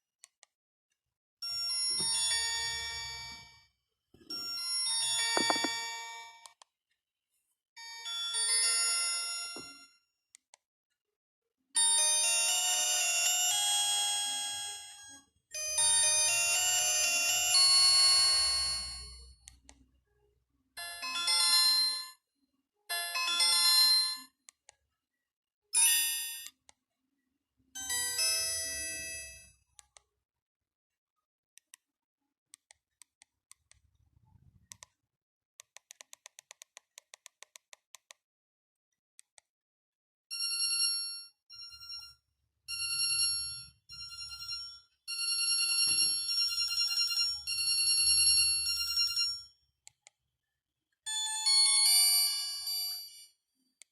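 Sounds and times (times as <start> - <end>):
high-pitched ringtone melody: 5.3 - 5.8, 42.7 - 49.5.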